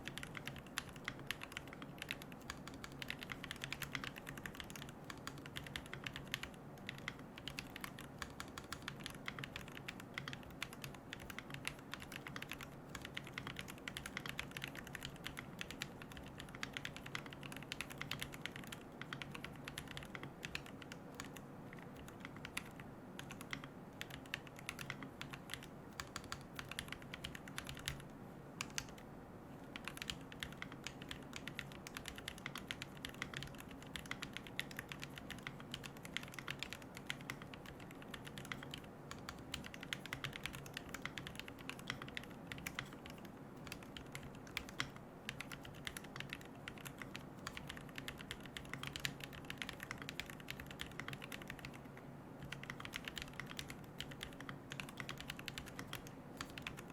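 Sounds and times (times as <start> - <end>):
mechanical keyboard keystroke clacks: 0.0 - 28.0, 29.8 - 56.9.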